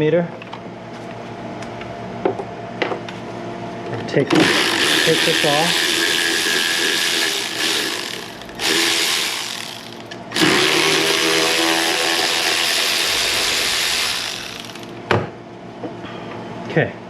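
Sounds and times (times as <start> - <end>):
cordless power tool spinning: 4.3 - 15.0.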